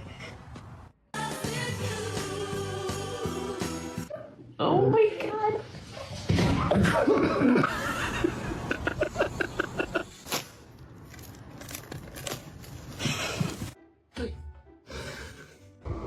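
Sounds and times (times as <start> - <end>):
person laughing: 6.8 - 10.2.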